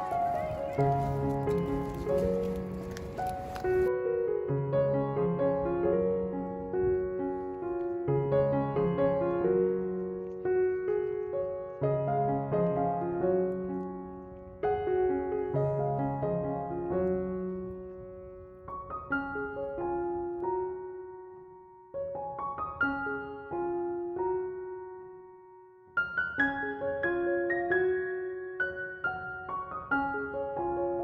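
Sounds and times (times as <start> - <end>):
solo piano music: 0.0 - 31.0.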